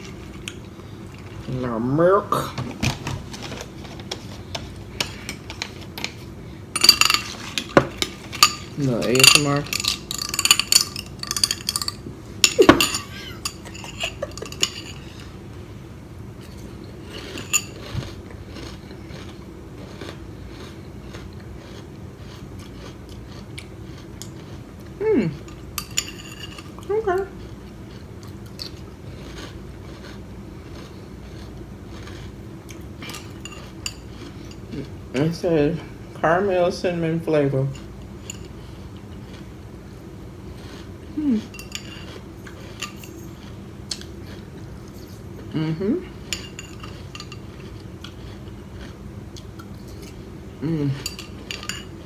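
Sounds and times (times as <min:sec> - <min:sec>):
person chewing crunchy cereal: 0:03.2 - 0:15.4, 0:16.4 - 0:35.0, 0:38.0 - 0:52.0
spoon clinking against bowl: 0:06.8 - 0:15.0.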